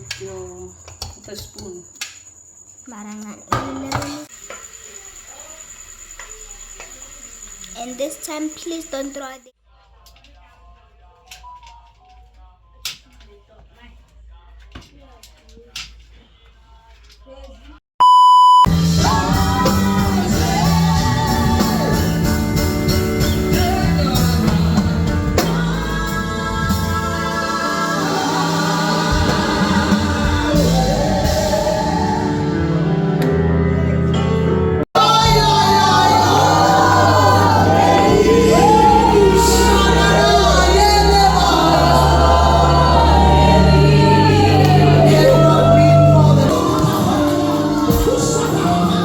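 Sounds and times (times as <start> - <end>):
music with singing: 18.7 - 49.0.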